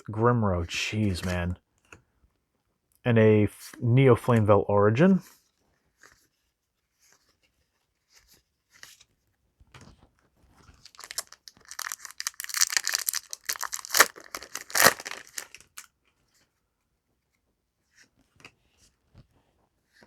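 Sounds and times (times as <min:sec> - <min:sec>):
foil wrapper ripping: 0:10.8 - 0:15.8
foil wrapper crinkling: 0:10.8 - 0:15.9.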